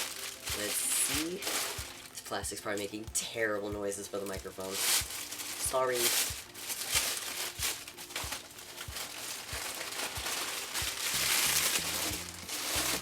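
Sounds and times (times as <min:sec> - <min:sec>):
plastic packaging crinkling: 0:00.0 - 0:13.0.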